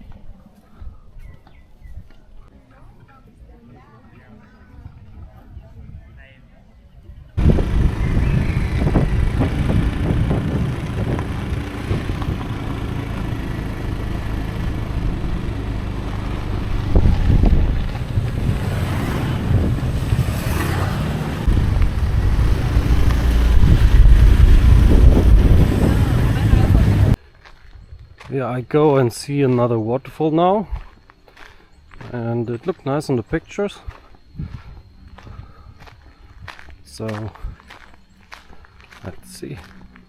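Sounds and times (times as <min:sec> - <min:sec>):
wind buffeting microphone: 0:06.9 - 0:28.2, 0:34.2 - 0:37.8
scooter engine running: 0:07.4 - 0:27.2.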